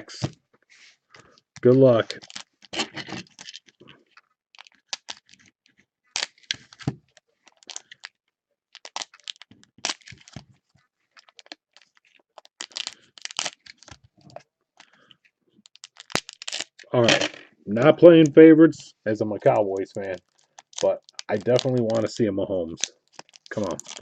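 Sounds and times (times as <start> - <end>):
packaging tearing and crinkling: 4.6 - 5.5, 6.1 - 8.1, 8.8 - 10.4, 11.1 - 17.1, 19.4 - 24.0.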